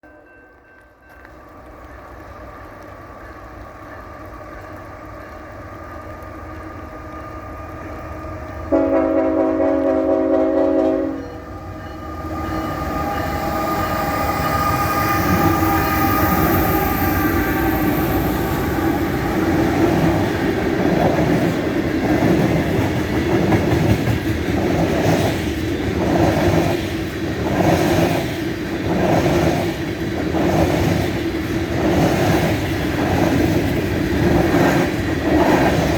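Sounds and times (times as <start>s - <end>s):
diesel train engines: 0.0s - 35.9s
train cars rolling beat: 0.0s - 35.9s
train air horn blast: 8.7s - 13.2s.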